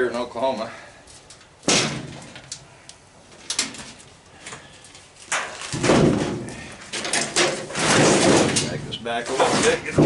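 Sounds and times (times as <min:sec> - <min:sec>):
clattering metal scrape: 0:05.3 - 0:10.0
knocks on sheet metal: 0:05.8 - 0:06.5.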